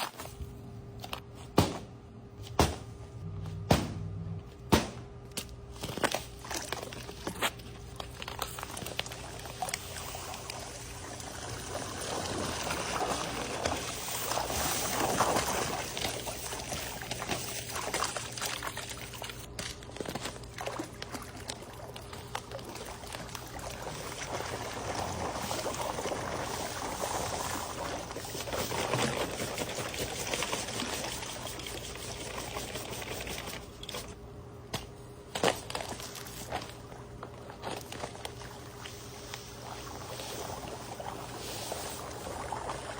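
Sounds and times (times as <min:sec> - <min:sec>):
sharp knocks: 0:03.6 - 0:04.1
water pouring and trickling: 0:08.0 - 0:33.9.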